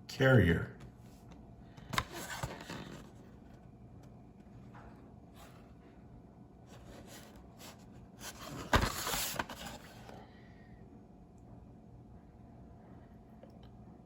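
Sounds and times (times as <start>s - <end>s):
packaging rustling: 6.8s - 10.1s.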